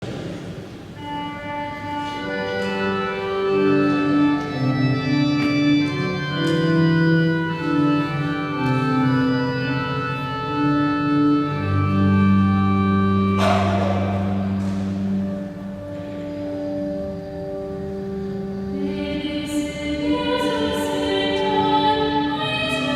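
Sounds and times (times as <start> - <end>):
church organ chords: 1.0 - 22.9
deep bass organ note: 11.8 - 17.3.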